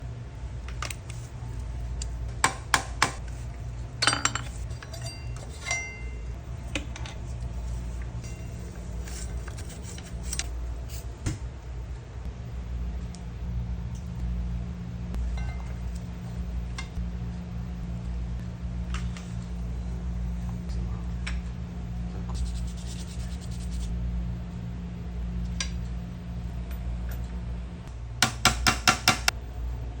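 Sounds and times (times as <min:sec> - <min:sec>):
low hum: 0:03.2 - 0:28.2
metal tools clinking: 0:04.0 - 0:06.3
metallic ring: 0:04.0 - 0:06.4, 0:08.2 - 0:11.0, 0:15.3 - 0:16.0.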